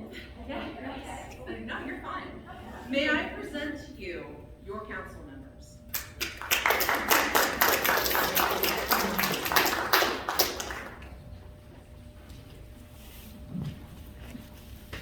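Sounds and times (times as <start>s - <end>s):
congregation applauding: 5.9s - 11.3s.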